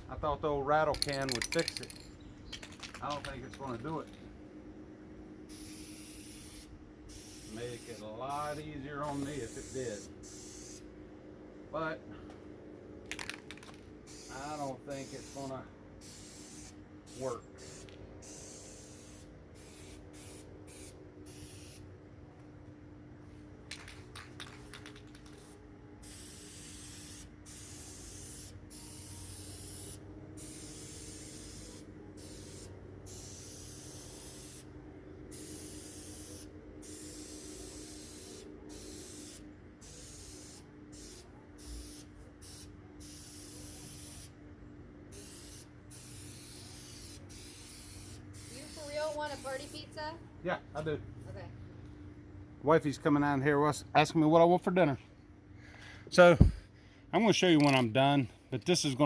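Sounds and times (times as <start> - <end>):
spray can hissing: 5.5 - 8.0, 9.1 - 10.8, 13.1 - 21.8, 23.8 - 34.7, 35.3 - 44.3, 45.1 - 49.8.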